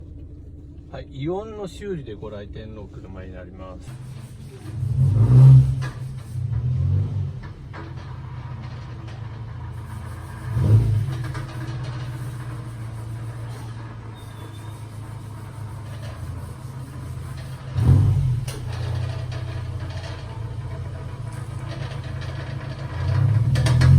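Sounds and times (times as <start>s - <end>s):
car engine idling and revving: 0.0s - 23.9s.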